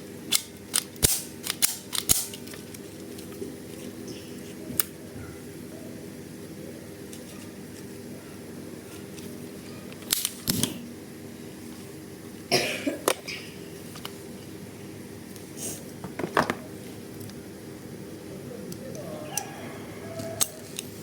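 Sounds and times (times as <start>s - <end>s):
plastic toy guns clicking: 0.3s - 2.6s.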